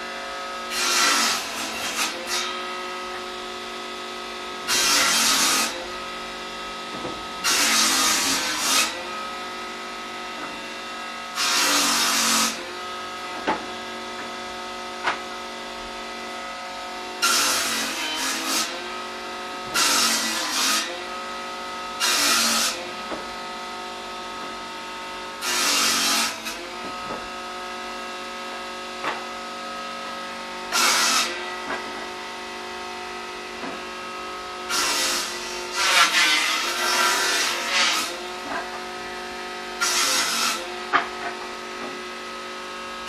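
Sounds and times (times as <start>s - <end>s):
saw blade cutting: 0.7s - 2.8s, 4.6s - 5.8s, 7.4s - 9.3s, 11.3s - 12.9s, 17.2s - 19.0s, 19.7s - 21.1s, 22.0s - 23.1s, 25.4s - 27.0s, 30.7s - 32.2s, 34.7s - 39.1s, 39.8s - 42.0s.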